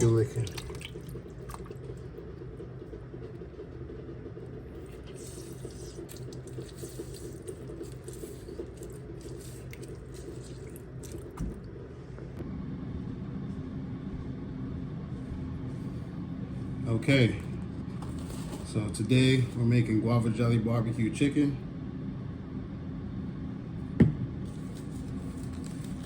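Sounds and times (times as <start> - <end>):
small water splashes: 0.2 - 1.8.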